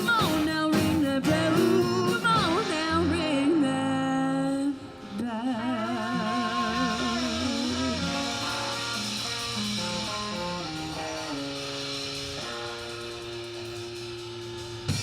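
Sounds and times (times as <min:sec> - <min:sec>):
electric guitar run: 0:05.6 - 0:15.0.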